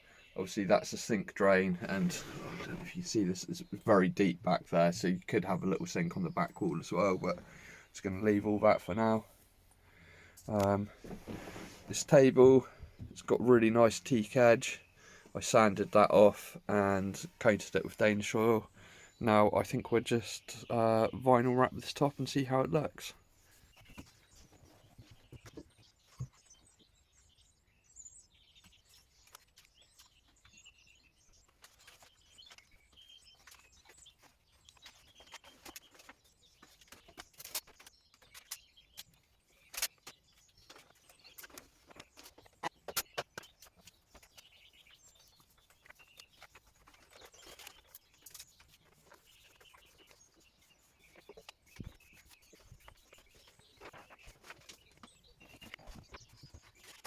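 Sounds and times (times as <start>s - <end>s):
faint birds chirping: 0.0s - 57.0s
light rustling: 10.4s - 13.2s.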